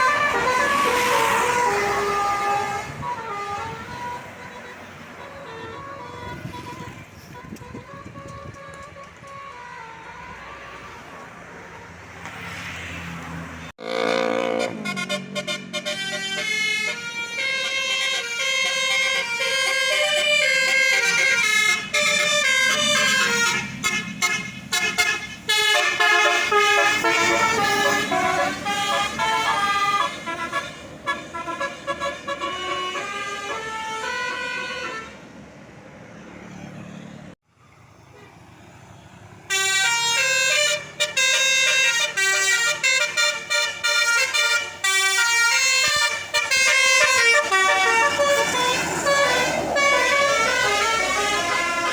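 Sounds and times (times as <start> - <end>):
multi-tone bus horn melody: 0.0 - 12.1, 13.7 - 35.4, 39.5 - 51.9.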